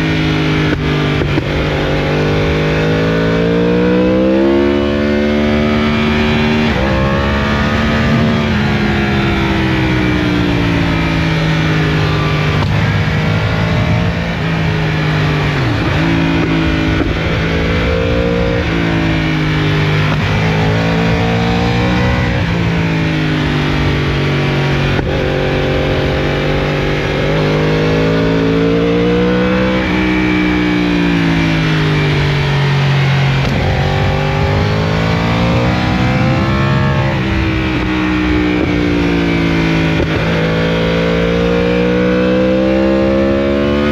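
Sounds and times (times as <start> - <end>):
motorcycle engine revving: 0.0 - 43.9.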